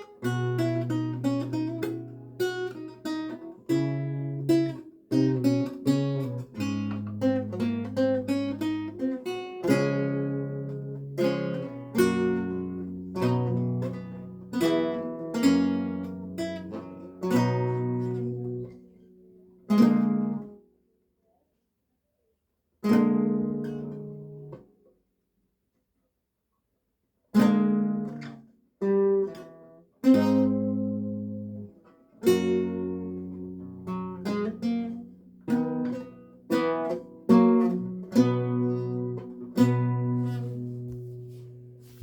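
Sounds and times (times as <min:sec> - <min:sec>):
lute plucked chords: 0:00.0 - 0:19.0, 0:27.4 - 0:42.0.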